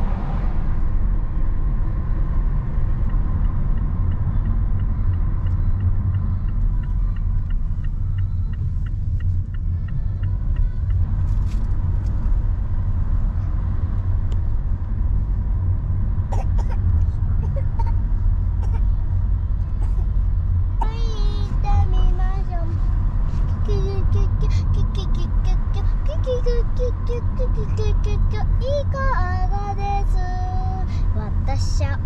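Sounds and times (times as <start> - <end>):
car cabin rumble: 0.0 - 32.0
faint regular ticking: 3.0 - 11.1.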